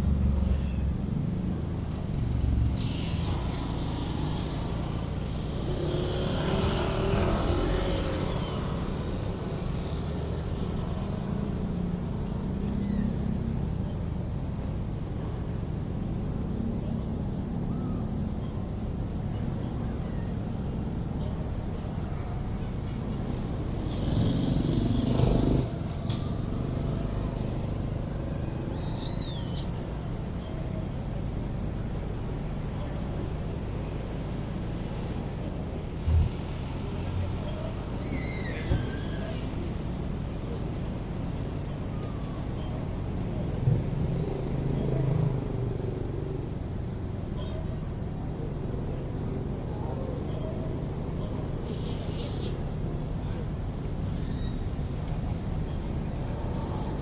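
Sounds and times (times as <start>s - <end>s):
low rumble of city traffic: 0.0s - 57.0s
faint distant voices: 16.4s - 57.0s.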